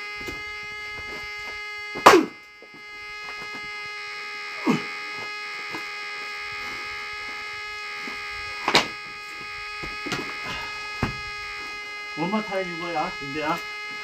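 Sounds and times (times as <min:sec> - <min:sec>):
steady buzzing hum: 0:00.0 - 0:14.0
axe striking wood: 0:02.0 - 0:02.4.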